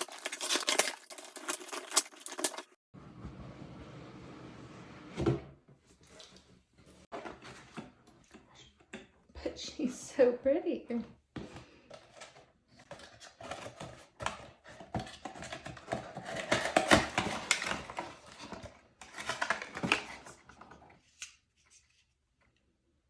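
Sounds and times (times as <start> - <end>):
packaging rustling and crinkling: 0.0 - 2.8.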